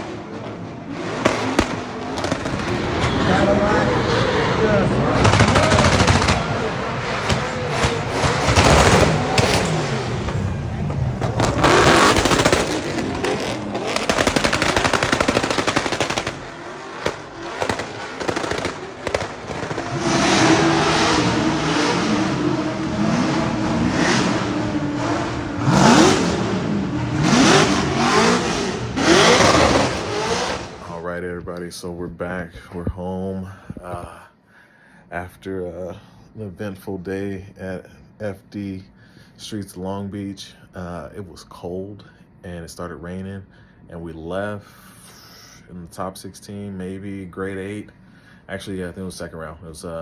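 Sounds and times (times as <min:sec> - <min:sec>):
car engines revving hard: 0:00.0 - 0:31.0
sharp exhaust popping: 0:00.0 - 0:31.0.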